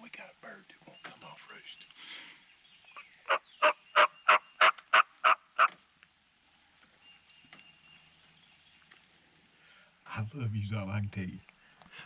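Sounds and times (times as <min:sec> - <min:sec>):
turkey yelping: 0:02.9 - 0:05.8.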